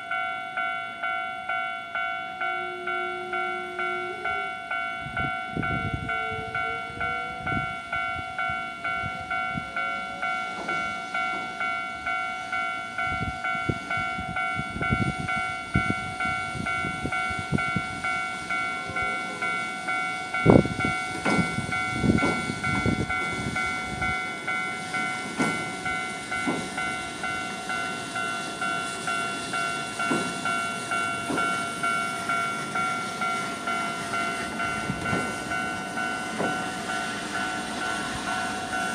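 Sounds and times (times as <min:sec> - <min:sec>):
level-crossing alarm dinging: 0:00.0 - 0:38.9
tram wheels clacking over rail joints: 0:14.9 - 0:38.9.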